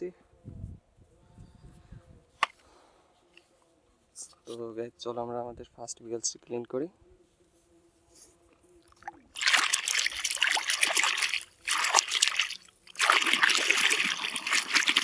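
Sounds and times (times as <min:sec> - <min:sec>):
water splashing over toy vehicle: 0:08.9 - 0:15.0.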